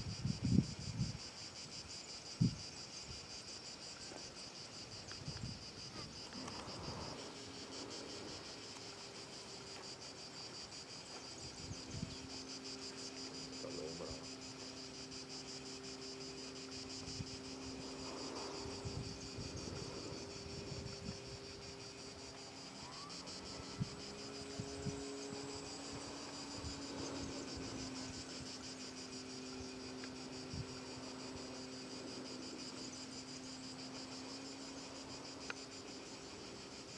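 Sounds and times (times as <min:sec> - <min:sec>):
insects trilling: 0:00.0 - 0:36.9.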